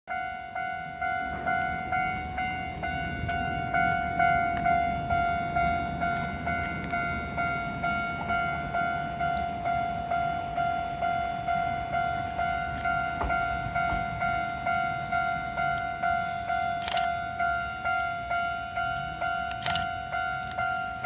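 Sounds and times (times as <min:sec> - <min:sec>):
level crossing bell ringing: 0:00.1 - 0:21.0.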